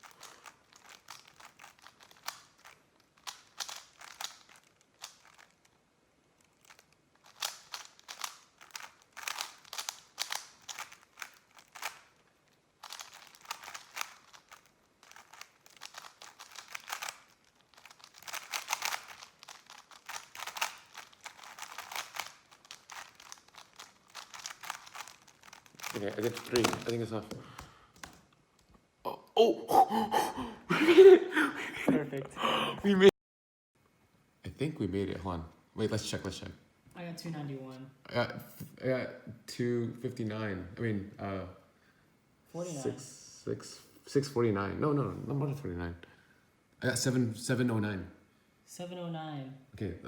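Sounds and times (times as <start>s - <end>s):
puzzle cube plastic clicks: 0.0s - 5.8s, 6.4s - 28.3s.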